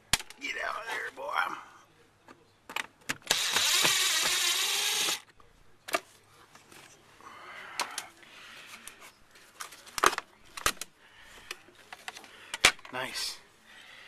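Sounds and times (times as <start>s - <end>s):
power drill backing out screw: 3.3s - 5.2s.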